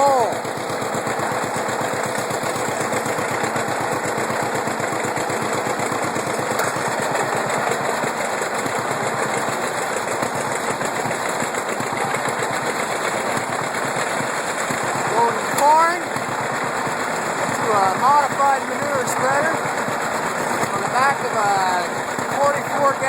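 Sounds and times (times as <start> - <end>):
machinery noise rushing: 0.0 - 23.0
two-cylinder tractor engine running: 0.0 - 23.0.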